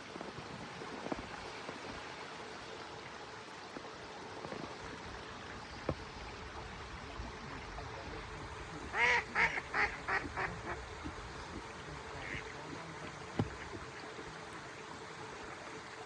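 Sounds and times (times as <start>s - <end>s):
running water: 0.0s - 16.0s
duck quacking: 8.9s - 10.8s, 12.2s - 12.5s.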